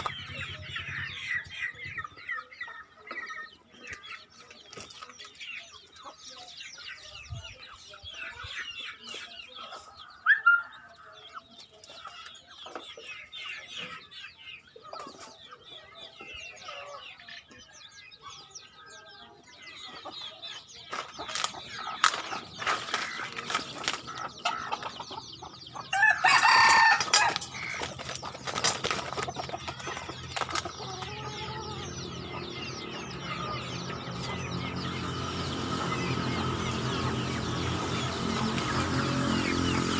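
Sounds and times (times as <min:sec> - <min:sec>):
chickens clucking: 0:00.0 - 0:39.9
rooster crowing: 0:25.9 - 0:27.5.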